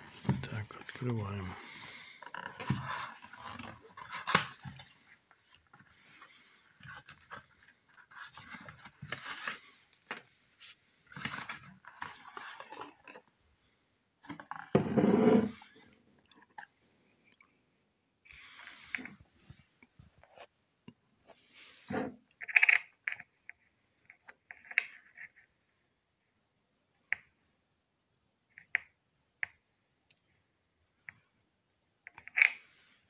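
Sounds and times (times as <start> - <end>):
packaging rustling and scraping: 0.0 - 13.3.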